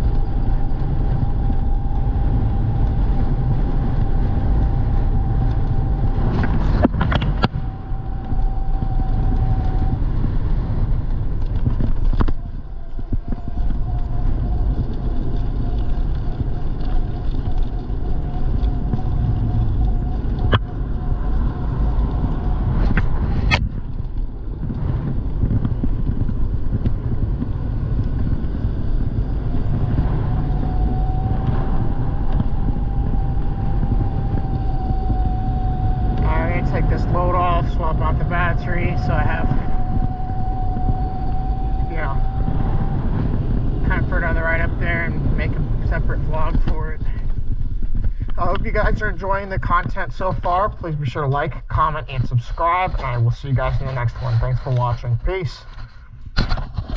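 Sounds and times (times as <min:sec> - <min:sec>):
road rumble: 0:00.0 - 0:56.9
wind: 0:00.0 - 0:56.9
electric motor whine: 0:24.0 - 0:45.8.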